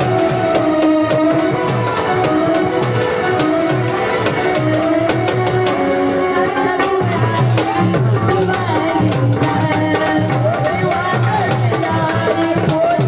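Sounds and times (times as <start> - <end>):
steady drum beat: 0.0 - 6.0, 6.8 - 13.0
melody line: 0.0 - 8.2.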